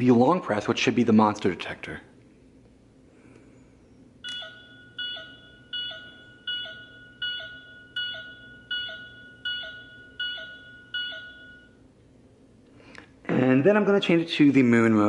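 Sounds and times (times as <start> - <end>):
toy electronic beep: 4.2 - 11.7.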